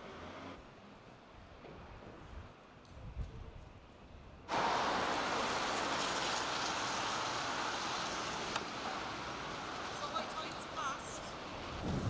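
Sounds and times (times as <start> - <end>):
water rushing: 4.5 - 11.7.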